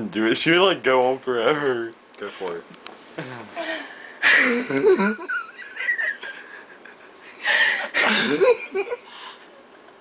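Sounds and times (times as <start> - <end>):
person wheezing laugh: 7.4 - 9.4.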